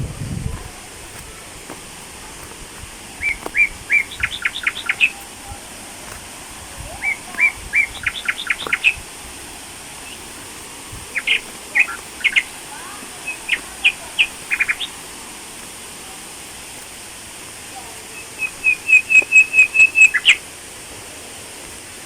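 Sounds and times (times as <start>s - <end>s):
steady background hiss: 0.0s - 22.0s
bird chirping: 3.2s - 5.6s, 6.8s - 9.0s, 10.0s - 15.0s, 18.1s - 20.4s.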